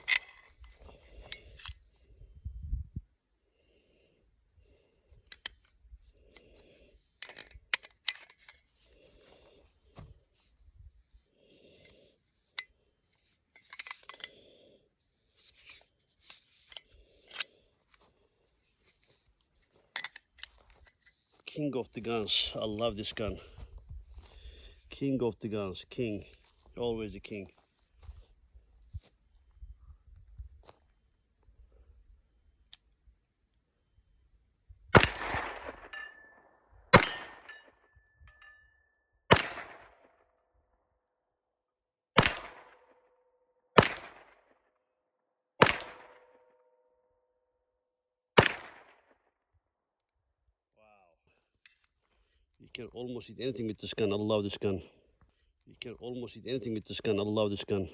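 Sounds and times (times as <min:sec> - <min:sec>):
handgun metal clicks and rubbing: 0:00.0 - 0:01.9, 0:05.1 - 0:09.3, 0:11.8 - 0:14.4, 0:15.4 - 0:21.5
pistol shots with echo: 0:35.0 - 0:36.2, 0:36.9 - 0:37.6, 0:39.3 - 0:40.0, 0:42.2 - 0:42.9, 0:43.8 - 0:44.4, 0:45.6 - 0:46.4, 0:48.4 - 0:49.0
thin metallic ring: 0:37.5 - 0:39.0.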